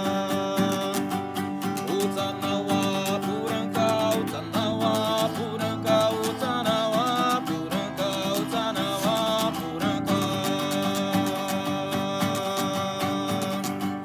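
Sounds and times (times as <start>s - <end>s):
acoustic guitar strumming: 0.0s - 14.0s.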